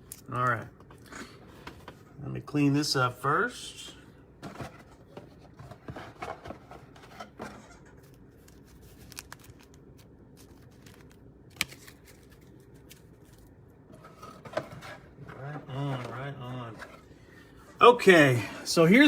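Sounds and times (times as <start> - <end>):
cards and wrappers rustling: 4.5 - 17.0.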